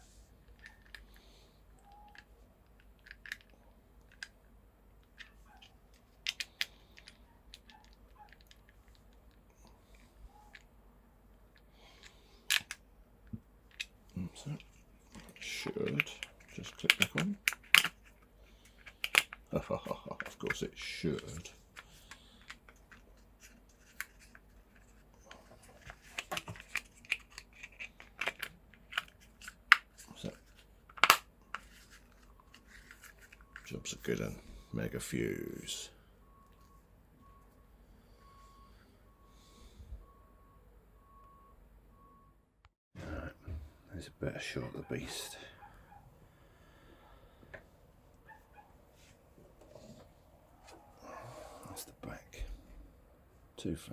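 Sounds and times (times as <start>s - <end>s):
small clicks and taps of parts: 0.6s - 4.4s, 5.0s - 10.7s, 15.1s - 19.4s.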